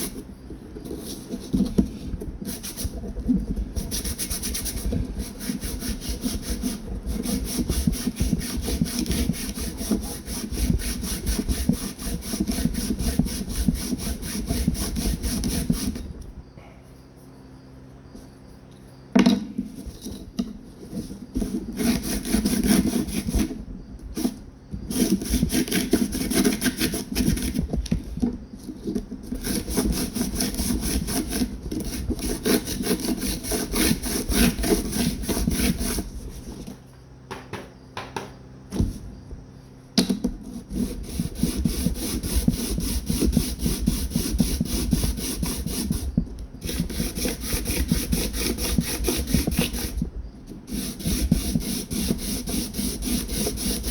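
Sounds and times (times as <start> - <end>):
sandpaper rubbing back and forth: 0.9 - 16.0, 20.9 - 27.8, 29.2 - 36.7, 40.4 - 50.1, 50.7 - 53.9.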